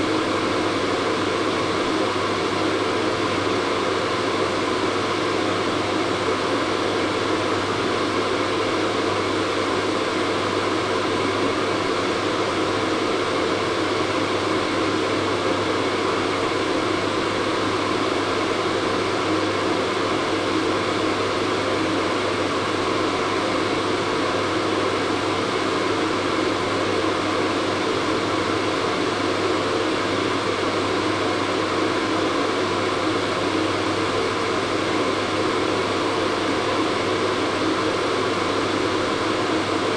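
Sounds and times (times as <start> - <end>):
hair dryer running: 0.0 - 39.9.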